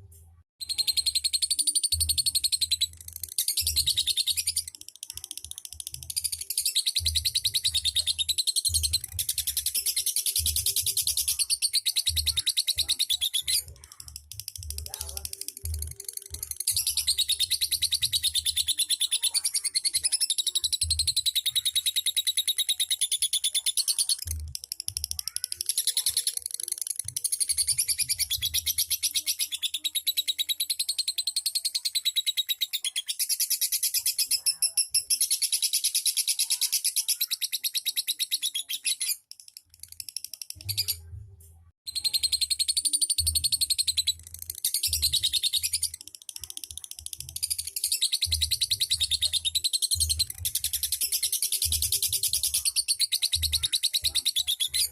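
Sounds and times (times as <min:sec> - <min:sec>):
lovebird chattering trill: 0:25.1 - 0:39.3.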